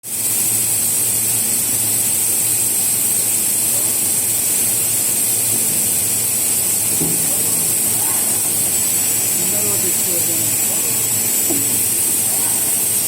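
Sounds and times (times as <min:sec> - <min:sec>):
machine high hiss: 0:00.0 - 0:13.0
low machine hum: 0:00.1 - 0:13.0.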